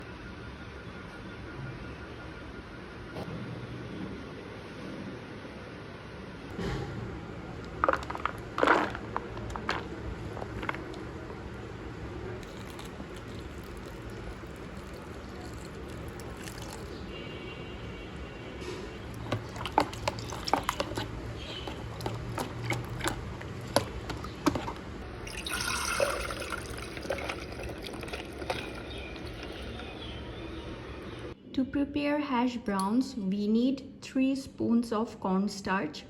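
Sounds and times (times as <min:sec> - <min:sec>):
water pouring and splashing: 0:12.4 - 0:17.2, 0:18.9 - 0:29.9.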